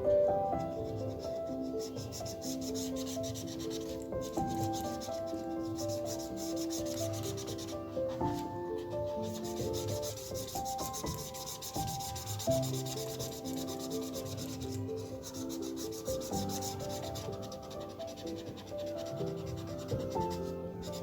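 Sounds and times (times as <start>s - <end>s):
soft instrumental tune: 0.0s - 21.0s
felt-tip pen rubbing on paper: 0.6s - 21.0s.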